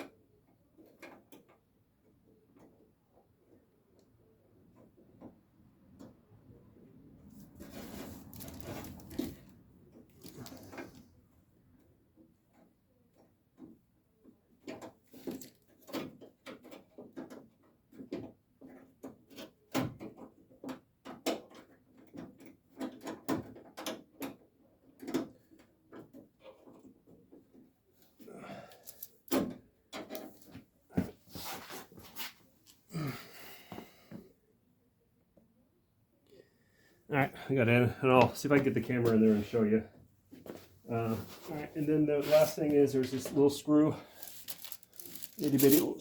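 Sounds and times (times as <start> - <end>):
scraping and rustling in door: 7.3 - 11.1.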